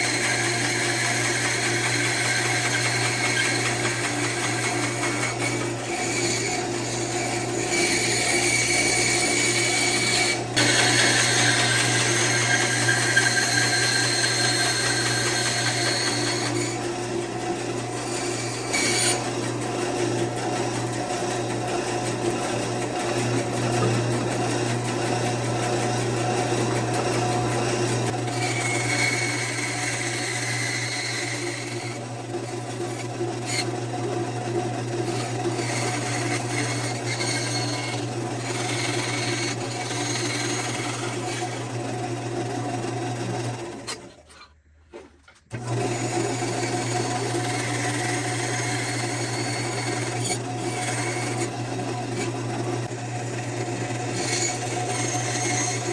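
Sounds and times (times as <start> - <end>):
power tool motor humming: 0.0 - 42.0
rasping wood cutting: 0.0 - 44.5, 45.5 - 55.9.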